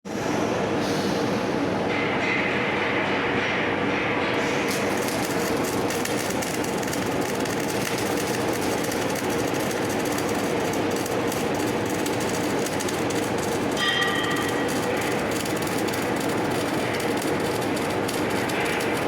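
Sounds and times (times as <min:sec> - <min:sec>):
welding arc crackling: 0:04.5 - 0:19.0.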